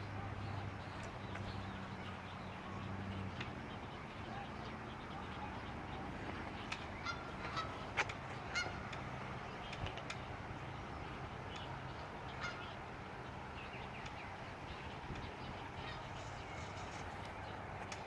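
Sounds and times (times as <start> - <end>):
geese honking: 6.9 - 8.9, 12.3 - 12.8.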